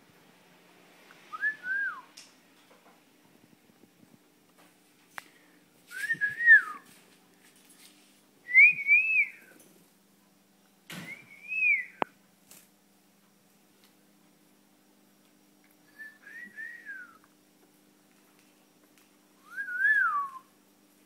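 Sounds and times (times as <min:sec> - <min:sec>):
person whistling a wavering tune: 0:01.3 - 0:02.0, 0:08.5 - 0:09.5, 0:15.9 - 0:17.2, 0:19.4 - 0:20.5.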